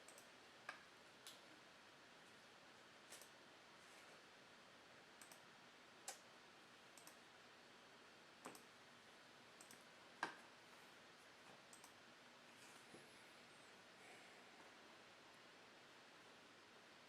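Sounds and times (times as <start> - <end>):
mouse and keyboard clicks: 7.0 - 7.2, 11.7 - 12.0.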